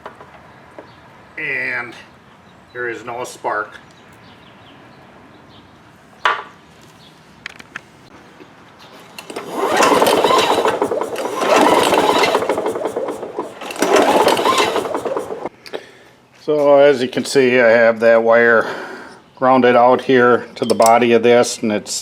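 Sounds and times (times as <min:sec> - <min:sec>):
mower engine cranking without firing: 0:09.1 - 0:15.5.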